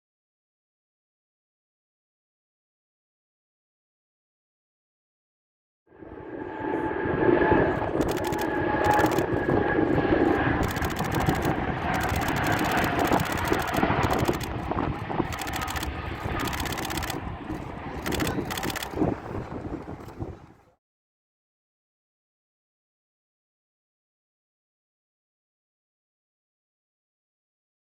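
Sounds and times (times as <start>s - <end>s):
jet engines whining: 5.9s - 20.4s
clicking bursts: 8.0s - 9.4s, 10.6s - 14.7s, 15.3s - 17.2s, 18.0s - 19.0s.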